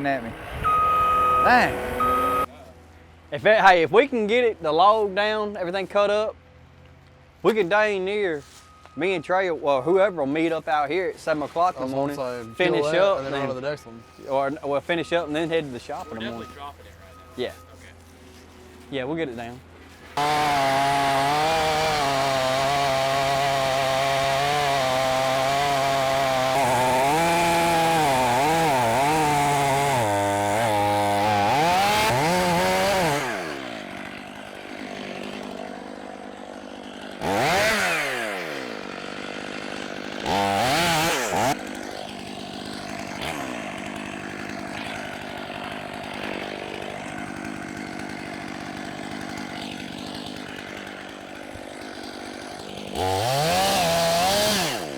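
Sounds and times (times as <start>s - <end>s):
chainsaw cutting wood: 0.0s - 2.5s, 9.9s - 54.9s
chainsaw idling: 0.0s - 2.5s, 19.4s - 54.9s.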